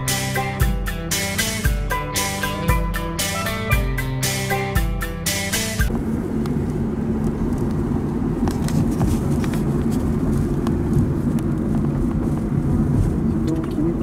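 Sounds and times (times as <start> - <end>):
music: 0.0 - 5.9
steady low rumble: 0.0 - 14.0.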